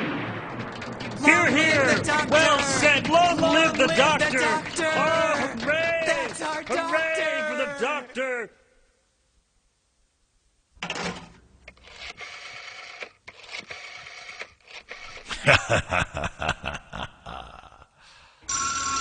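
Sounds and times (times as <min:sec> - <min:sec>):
fast run of pulses: 0:00.0 - 0:06.7
telephone ringing two-tone: 0:18.5 - 0:19.0.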